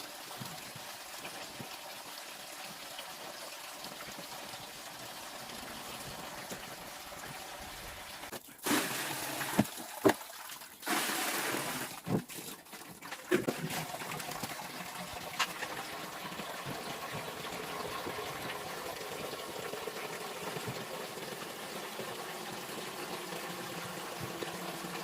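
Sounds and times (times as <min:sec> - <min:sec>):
water running: 0:00.0 - 0:25.0.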